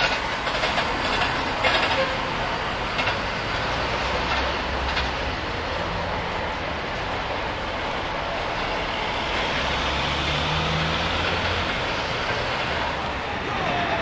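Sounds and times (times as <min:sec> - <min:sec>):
heavy vehicle engines: 0:00.0 - 0:14.0
street traffic: 0:00.0 - 0:14.0.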